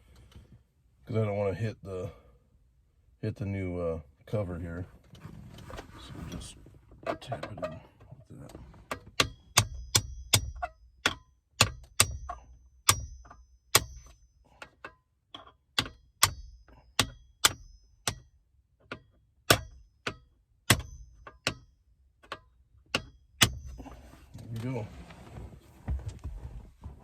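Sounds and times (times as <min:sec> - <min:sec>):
hammer tapping on metal punch: 0:09.1 - 0:14.2, 0:15.4 - 0:18.3.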